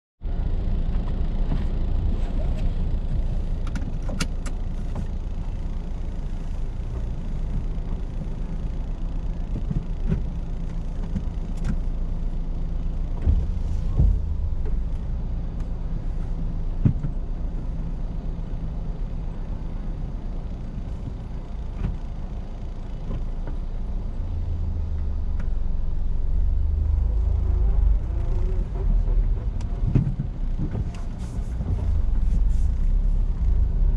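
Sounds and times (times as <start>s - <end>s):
road and engine rumble: 0.2s - 33.9s.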